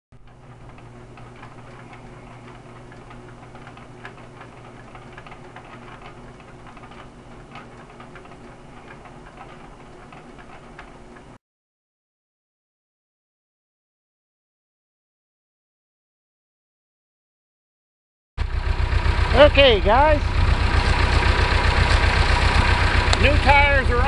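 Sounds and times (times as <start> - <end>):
irregular ticking: 0.2 - 11.4, 19.0 - 24.0
diesel tractor engine idling: 18.4 - 24.0.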